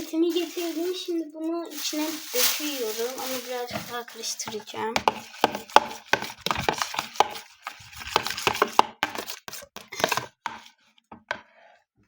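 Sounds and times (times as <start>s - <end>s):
spoon clacking against container: 4.4s - 10.6s.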